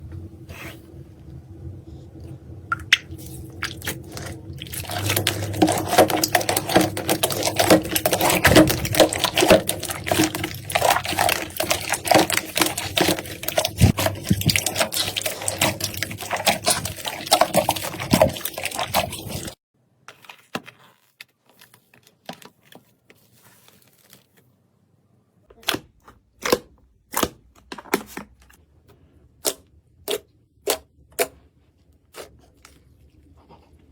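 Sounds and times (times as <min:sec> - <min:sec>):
slime squishing: 0:02.7 - 0:22.2.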